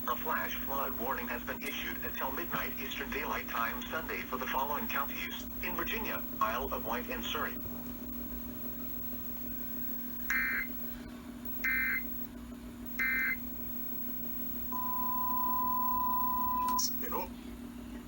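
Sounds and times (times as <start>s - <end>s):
low steady hum: 0.0s - 18.0s
digital data tone bursts: 12.9s - 17.0s
steady single tone: 12.9s - 17.0s.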